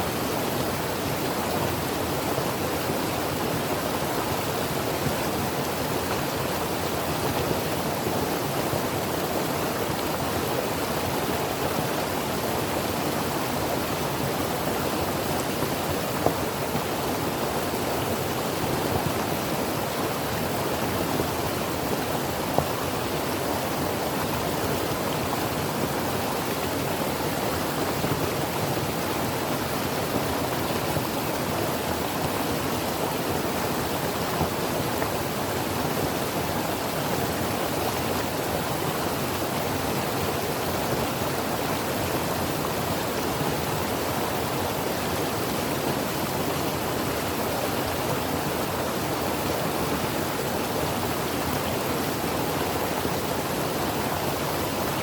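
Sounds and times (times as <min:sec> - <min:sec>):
creek water flowing over rocks: 0:00.0 - 0:55.0.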